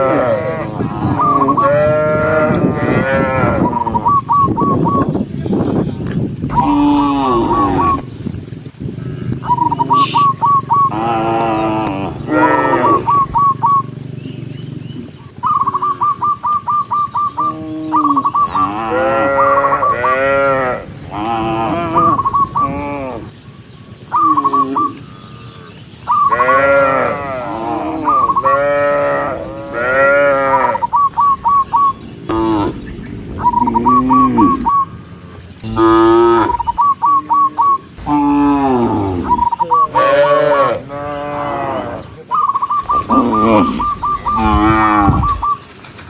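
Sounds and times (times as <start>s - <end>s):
cattle mooing: 0.0s - 4.0s, 6.5s - 8.2s, 10.9s - 13.3s, 17.5s - 23.4s, 24.2s - 31.0s, 32.3s - 34.9s, 35.5s - 42.2s, 42.9s - 45.4s.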